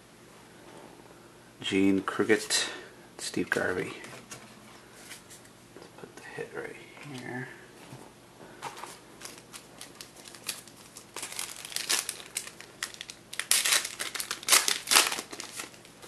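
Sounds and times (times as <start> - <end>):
packaging crinkling: 8.8 - 16.0.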